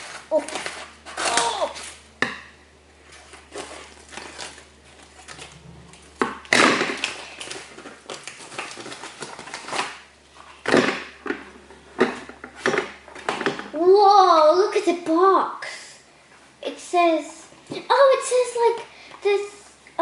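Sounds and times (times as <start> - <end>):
packaging rustling and crackling: 3.1 - 10.8.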